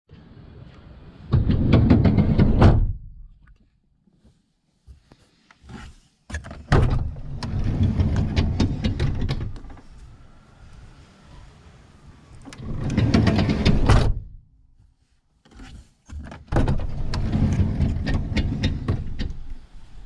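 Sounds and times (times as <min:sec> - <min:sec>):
sliding door grinding along rail: 0:00.2 - 0:02.7, 0:07.0 - 0:14.2, 0:16.6 - 0:20.0.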